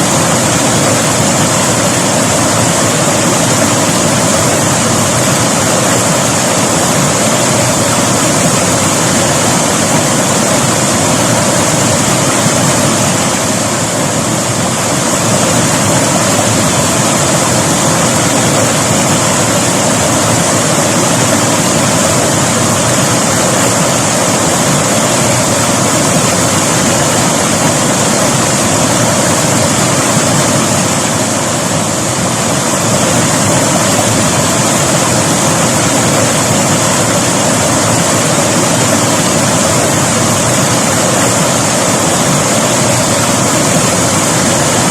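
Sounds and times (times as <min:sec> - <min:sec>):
river water rushing over rocks: 0:00.0 - 0:44.9.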